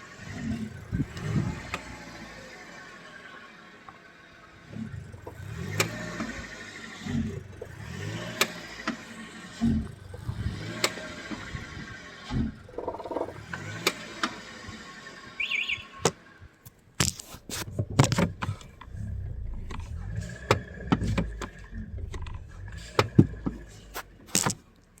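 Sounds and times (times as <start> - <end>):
low rumble inside car: 0.0 - 25.0
sharp knocks and clicks: 12.3 - 14.3, 16.0 - 18.9.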